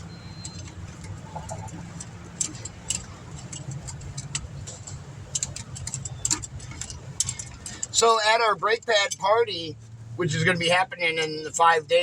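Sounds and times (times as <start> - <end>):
light metallic clicks of tools: 2.0 - 8.0.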